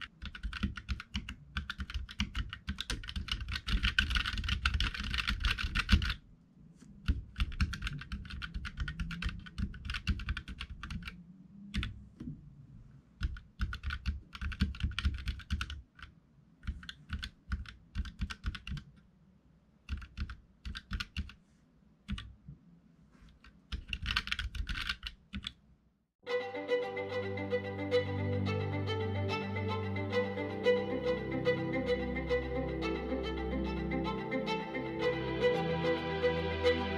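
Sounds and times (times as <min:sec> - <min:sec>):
violin music: 0:26.2 - 0:36.9.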